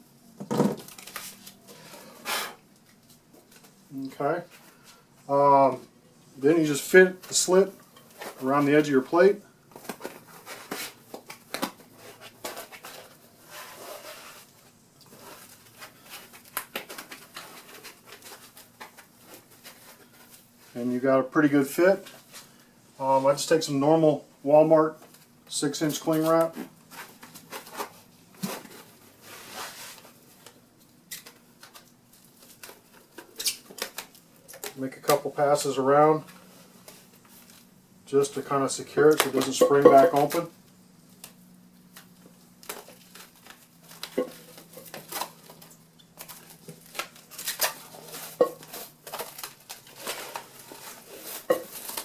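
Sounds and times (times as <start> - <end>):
cling wrap rustling and crackling: 6.5 - 20.9, 24.9 - 52.0.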